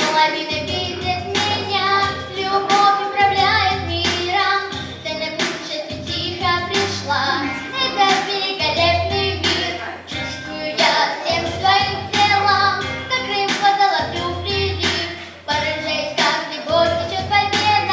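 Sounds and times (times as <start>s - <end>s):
backing track with beat: 0.0s - 17.9s
girl singing: 0.0s - 17.9s.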